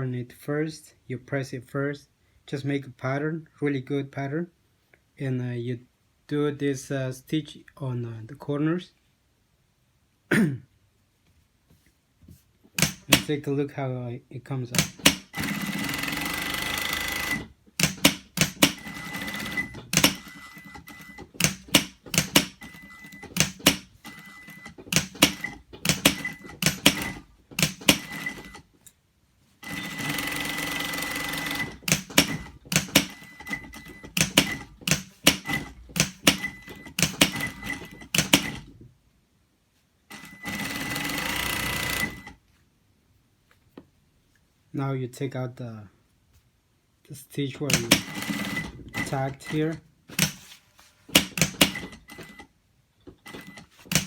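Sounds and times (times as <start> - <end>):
sewing machine whining: 14.8 - 28.7, 29.6 - 38.7, 40.1 - 42.4, 47.7 - 50.4, 51.2 - 52.5, 53.2 - 54.0.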